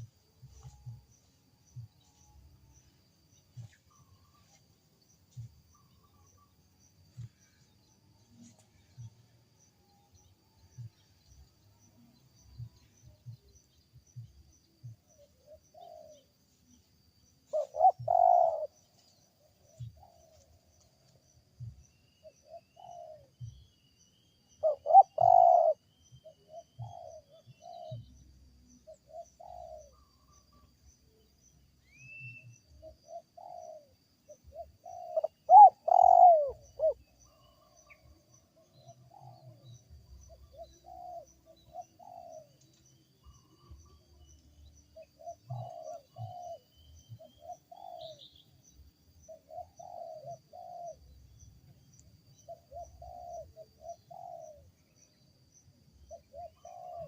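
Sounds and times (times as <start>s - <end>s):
dove cooing: 14.8s - 16.3s, 17.5s - 18.8s, 22.2s - 23.6s, 24.6s - 28.1s, 28.9s - 30.0s, 32.8s - 38.0s, 40.3s - 42.6s, 45.0s - 48.3s, 49.3s - 51.2s, 52.5s - 54.7s, 56.1s - 57.0s.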